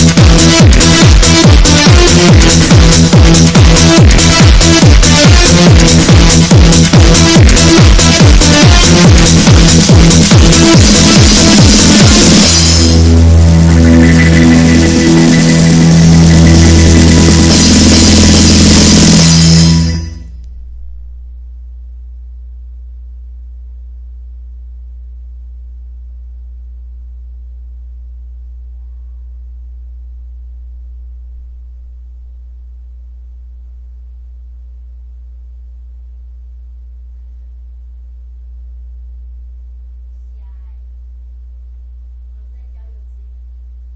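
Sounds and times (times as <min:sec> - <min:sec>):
low electrical hum: 0:19.7 - 0:43.9.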